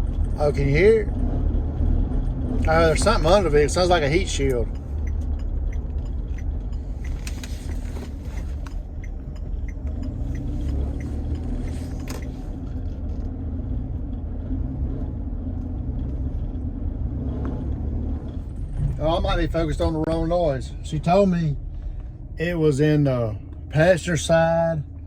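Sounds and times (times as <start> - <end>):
vehicle rolling rumble: 0.0 - 25.0
rattling clicks underneath vehicle: 2.2 - 13.4, 18.3 - 22.4.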